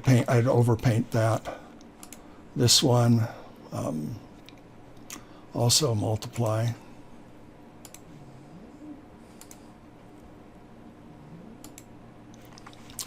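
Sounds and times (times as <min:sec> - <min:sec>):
low steady hum: 0:00.0 - 0:13.0
computer mouse clicks: 0:02.0 - 0:02.3, 0:07.8 - 0:08.1, 0:09.4 - 0:09.6, 0:11.6 - 0:13.0.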